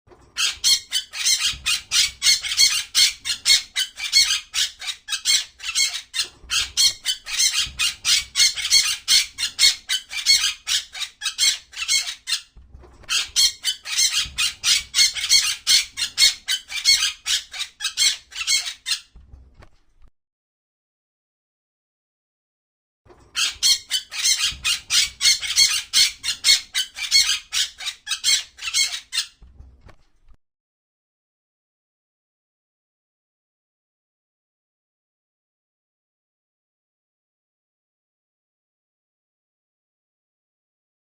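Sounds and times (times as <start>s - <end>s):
parrot squawking: 0.4s - 19.1s, 23.4s - 29.4s.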